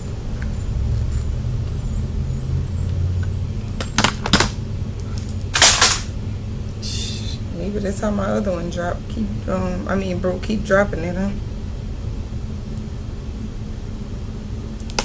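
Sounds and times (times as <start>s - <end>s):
steady low rumble: 0.0s - 15.0s
object dropped clattering: 5.6s - 6.1s.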